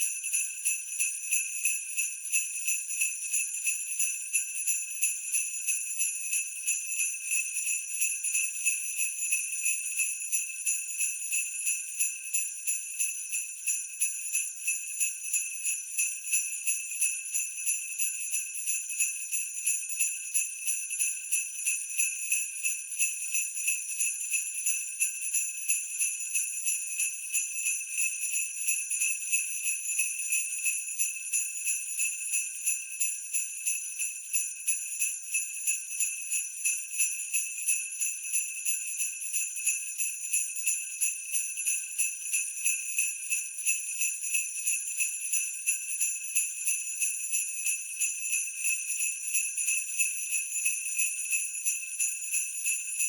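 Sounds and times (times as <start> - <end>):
sleigh bells jingling: 26.0 - 53.0.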